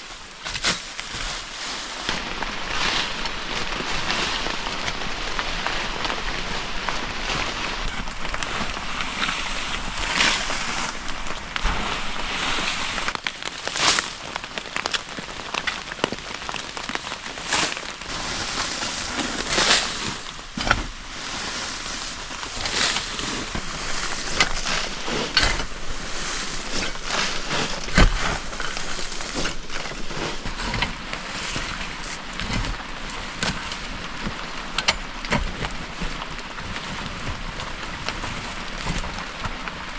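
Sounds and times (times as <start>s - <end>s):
rain falling in forest: 0.0s - 39.9s
rustles and snaps: 0.0s - 39.9s.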